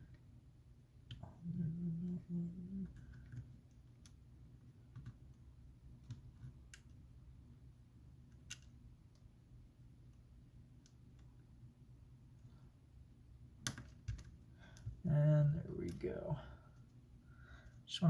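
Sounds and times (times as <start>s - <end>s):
faint steady low hum: 0.0s - 18.0s.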